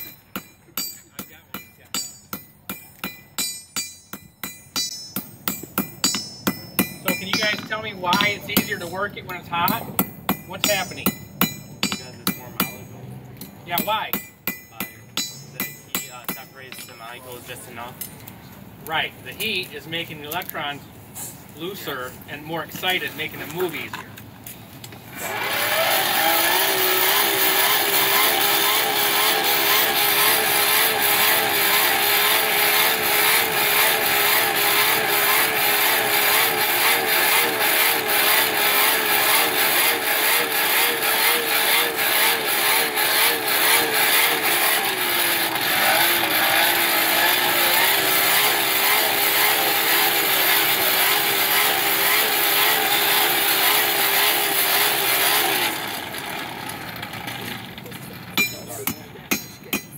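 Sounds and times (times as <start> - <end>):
harsh rasping grind: 5.0 - 18.0, 25.0 - 59.9
electric motor whine: 25.0 - 58.3.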